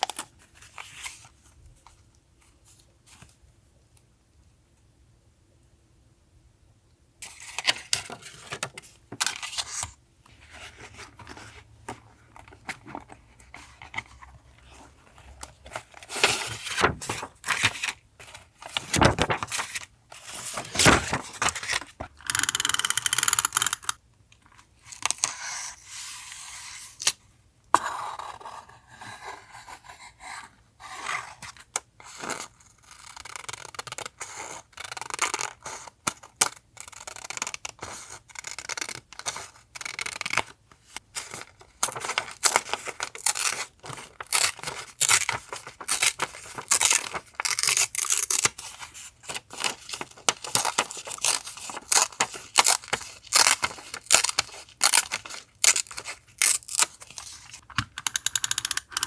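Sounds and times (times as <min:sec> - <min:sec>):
paper rustling: 0:07.3 - 0:22.1, 0:41.2 - 0:57.7.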